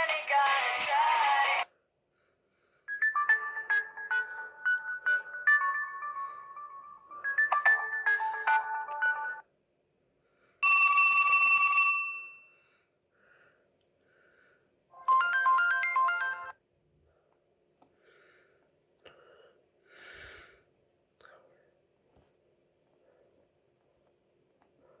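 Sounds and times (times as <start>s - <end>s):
phone ringtone melody: 2.9s - 9.4s, 10.6s - 12.4s, 15.0s - 16.6s
rapid electronic melody: 3.0s - 9.4s.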